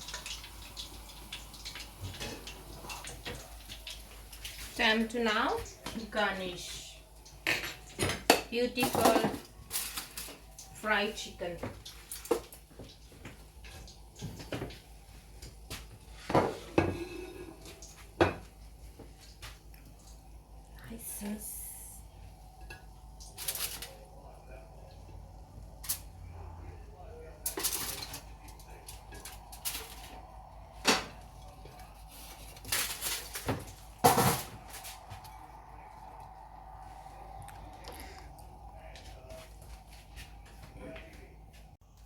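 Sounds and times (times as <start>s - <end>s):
dishes and utensils clattering: 1.0s - 4.7s, 7.3s - 10.4s, 16.2s - 18.6s, 27.4s - 35.4s.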